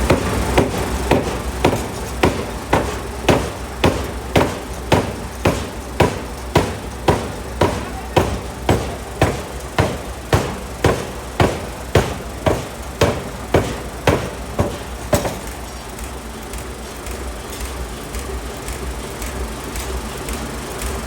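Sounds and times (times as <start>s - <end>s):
forging hammer striking steel: 0.0s - 15.8s
low machine hum: 0.0s - 21.0s.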